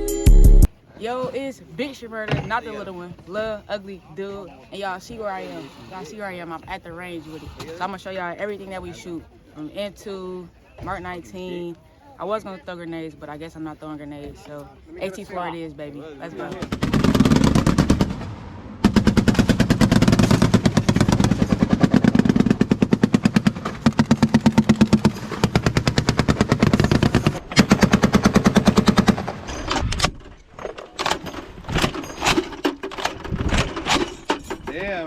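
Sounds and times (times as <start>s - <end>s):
machine-gun fire: 16.6s - 29.3s.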